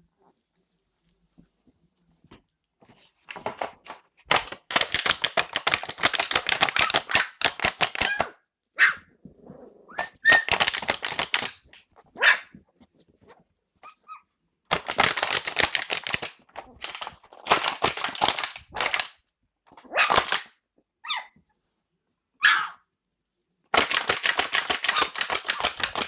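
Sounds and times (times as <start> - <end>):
puppy squeals: 9.9 - 10.6, 13.8 - 14.2, 21.0 - 21.4, 22.4 - 22.8
rapid clattering rattle: 23.7 - 26.0.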